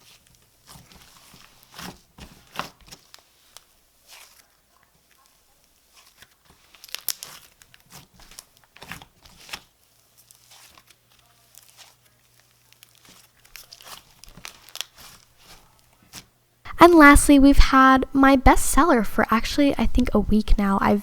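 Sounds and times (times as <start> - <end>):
slime squished by hand: 10.4 - 16.3.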